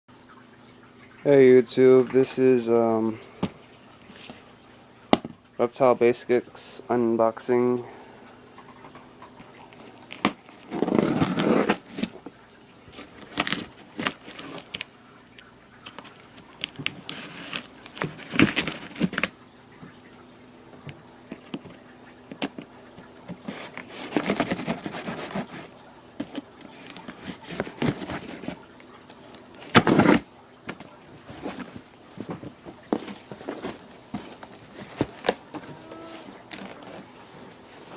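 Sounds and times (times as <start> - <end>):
packaging clicks and scrapes: 9.7 - 12.2, 12.9 - 14.9, 15.8 - 19.3, 23.3 - 28.6, 29.3 - 37.1
packaging rustling: 9.7 - 14.9, 15.8 - 19.3, 21.3 - 37.2.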